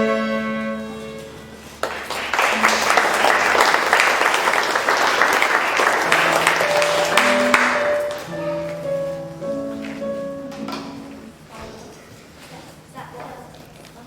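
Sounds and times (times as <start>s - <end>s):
held instrument notes: 0.0s - 11.5s
audience applauding: 1.8s - 8.6s.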